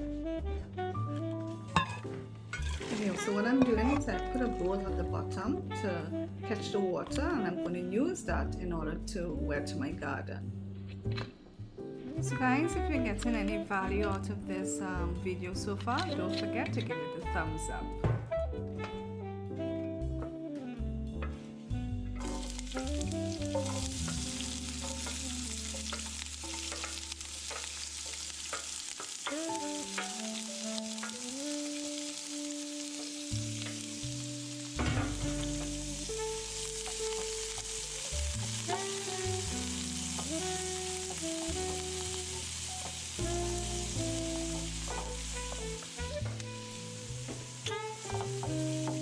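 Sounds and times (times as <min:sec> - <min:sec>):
background music: 0:00.0 - 0:49.0
food sizzling in a frying pan: 0:01.7 - 0:04.9, 0:22.2 - 0:49.0
utensil scraping a pan: 0:01.8 - 0:04.8, 0:22.2 - 0:29.4.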